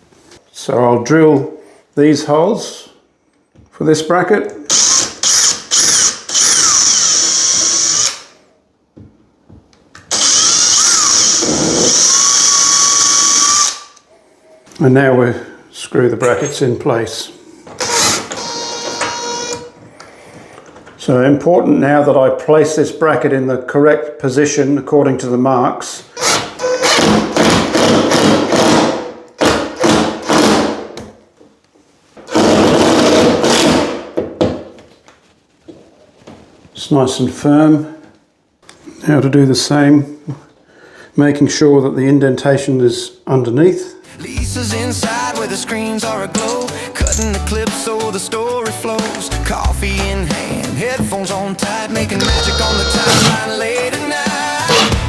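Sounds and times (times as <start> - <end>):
power drill boring: 4.7 - 8.3, 10.1 - 13.9, 17.8 - 19.7, 26.2 - 30.6, 32.3 - 33.8, 52.1 - 53.4.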